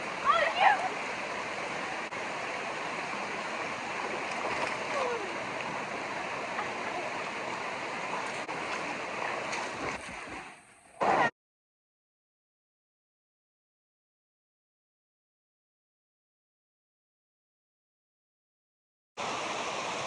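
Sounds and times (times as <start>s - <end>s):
waterfall rushing: 0.0s - 11.3s
faint voice: 4.9s - 5.4s.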